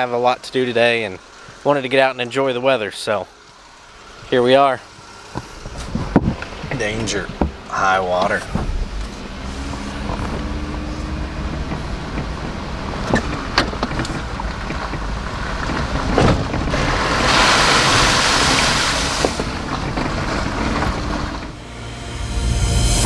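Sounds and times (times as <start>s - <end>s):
vehicle engine and tyres rumbling: 0.0s - 23.0s
water splashing: 14.1s - 21.8s.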